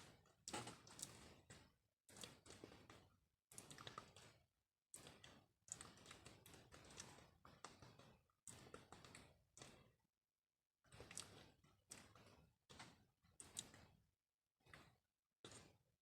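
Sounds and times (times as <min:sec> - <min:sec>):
crackly bursts of small clicks: 0:00.4 - 0:04.4, 0:05.0 - 0:09.9, 0:10.9 - 0:13.9.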